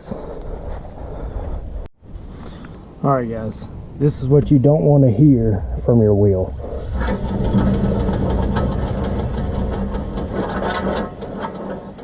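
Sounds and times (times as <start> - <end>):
engine humming: 0.0 - 12.0
wheel bearing clicking rapidly: 6.5 - 12.0.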